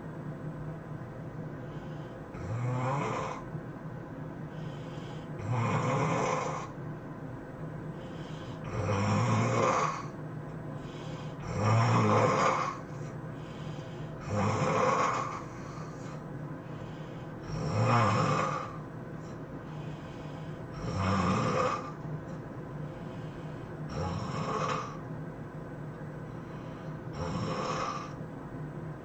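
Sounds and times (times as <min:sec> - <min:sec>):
person snoring loudly: 0:02.3 - 0:03.5, 0:04.8 - 0:06.8, 0:08.0 - 0:10.1, 0:10.9 - 0:13.1, 0:13.7 - 0:16.2, 0:17.4 - 0:18.8, 0:20.1 - 0:22.0, 0:23.9 - 0:25.0, 0:26.5 - 0:28.2.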